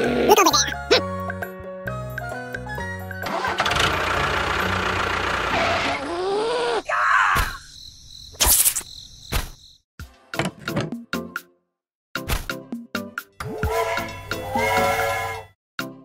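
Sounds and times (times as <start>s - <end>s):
music: 0.0s - 5.3s, 10.0s - 16.0s
engine-like running with fine pulsing: 3.2s - 6.1s.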